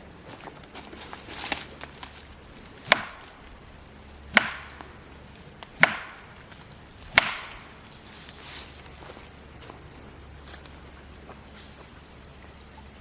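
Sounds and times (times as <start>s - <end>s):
wooden knocks on tree trunk: 4.4s - 4.9s, 5.7s - 6.3s, 7.1s - 7.7s.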